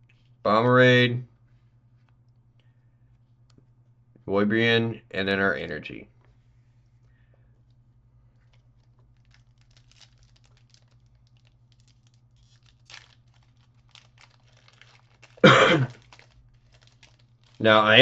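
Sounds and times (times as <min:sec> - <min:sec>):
low electrical hum: 0:00.0 - 0:18.0
cards rustling and clicking: 0:07.6 - 0:18.0.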